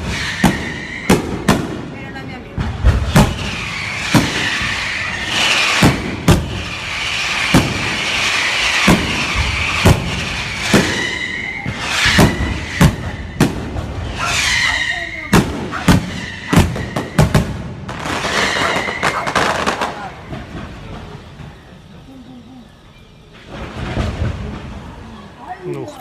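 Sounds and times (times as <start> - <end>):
firework shell bangs: 0.0 - 2.0, 2.6 - 21.1
firework whistles: 0.0 - 25.6
firework hiss: 0.0 - 26.0.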